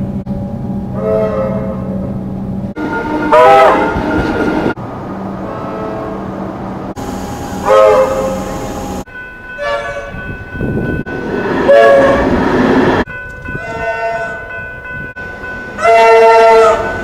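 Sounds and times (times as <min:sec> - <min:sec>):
train running noise: 0:00.0 - 0:17.0
electric train horn blasts: 0:01.0 - 0:02.2, 0:02.8 - 0:06.4, 0:07.0 - 0:09.0, 0:11.1 - 0:12.4, 0:15.8 - 0:17.0.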